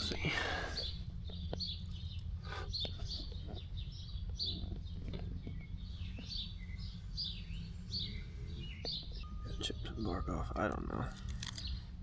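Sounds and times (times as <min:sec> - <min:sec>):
songbirds chirping: 0:00.0 - 0:12.0.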